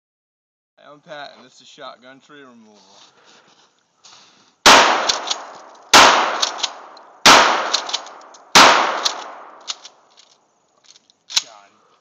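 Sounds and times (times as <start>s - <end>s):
shotgun shots: 4.7s - 9.8s
sharp clicks: 5.0s - 11.6s.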